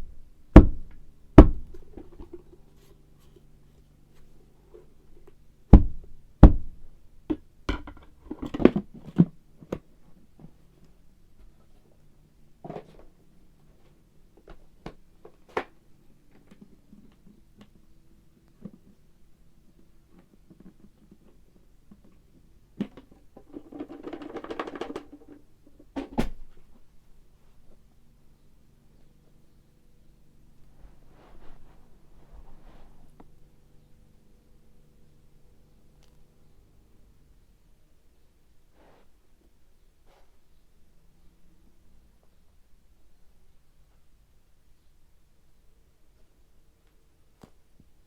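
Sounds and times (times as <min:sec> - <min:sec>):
sharp knocks: 0:00.6 - 0:01.8, 0:05.7 - 0:06.8
knocks of hard objects: 0:00.6 - 0:02.5, 0:05.7 - 0:09.8, 0:22.8 - 0:26.3.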